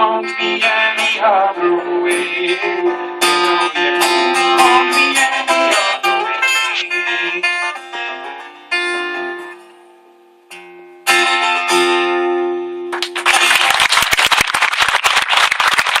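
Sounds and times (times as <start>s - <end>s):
guitar chords ringing: 0.0s - 13.2s
audience applauding: 13.0s - 16.0s.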